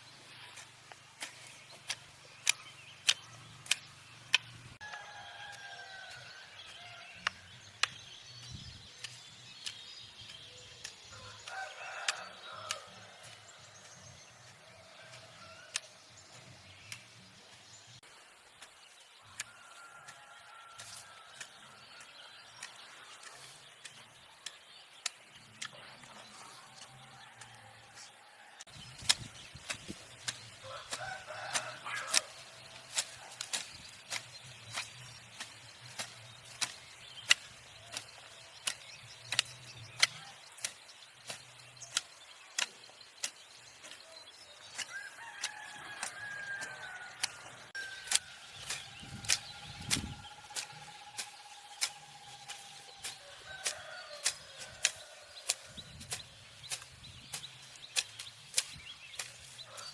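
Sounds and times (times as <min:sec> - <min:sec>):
rooster crowing: 0:04.8 - 0:07.1, 0:11.2 - 0:13.0, 0:30.6 - 0:32.3, 0:44.9 - 0:48.2, 0:53.2 - 0:55.4.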